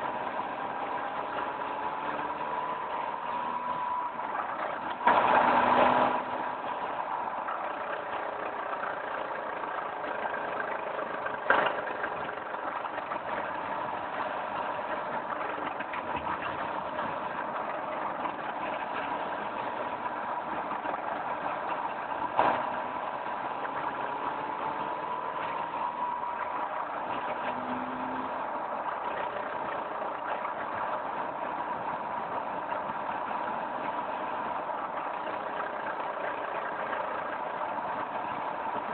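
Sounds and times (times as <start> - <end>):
car engine humming with whine: 0.0 - 38.9.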